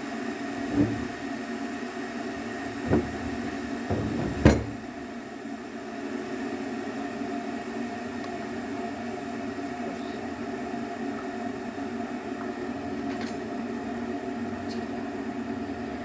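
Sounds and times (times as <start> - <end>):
machine hum: 0.6 - 1.4, 2.1 - 5.0.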